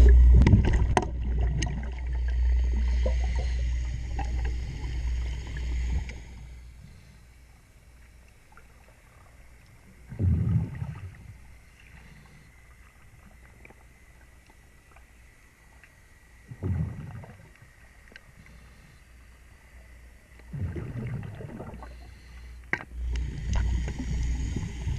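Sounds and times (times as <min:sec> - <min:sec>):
underwater breath bubbling: 0:00.0 - 0:07.3, 0:10.1 - 0:12.7, 0:16.5 - 0:17.5, 0:20.4 - 0:24.9
faint steady hum: 0:00.0 - 0:24.9.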